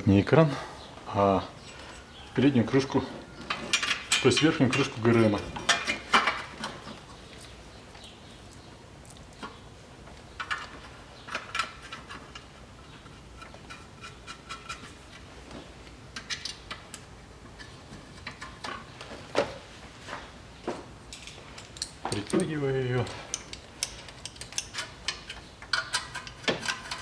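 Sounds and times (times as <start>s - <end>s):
metal cover and bolts clinking: 2.7s - 7.0s, 23.2s - 27.0s.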